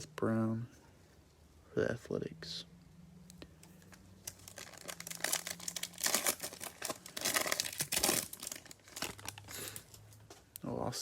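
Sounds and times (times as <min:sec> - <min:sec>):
wrapper tearing and crinkling: 0:04.2 - 0:10.1.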